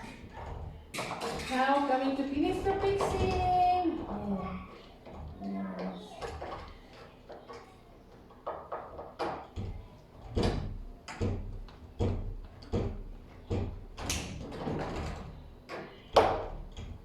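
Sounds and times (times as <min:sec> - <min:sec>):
knocks against a door: 0:08.5 - 0:15.2, 0:16.1 - 0:17.0.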